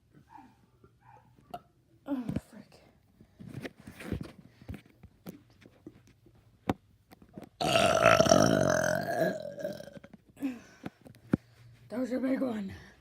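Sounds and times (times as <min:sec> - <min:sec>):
child burping loudly: 0:07.6 - 0:10.1.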